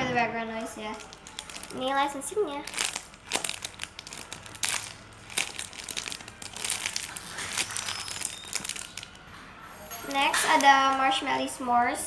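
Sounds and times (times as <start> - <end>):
plastic packaging crinkling: 0.5 - 9.3.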